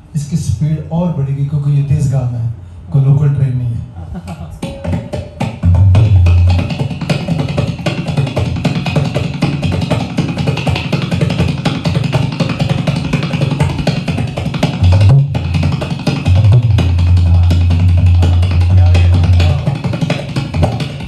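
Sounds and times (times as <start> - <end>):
tabla played fast: 4.2 - 21.0
deep booming bass drum strokes: 5.6 - 6.9, 14.7 - 20.9.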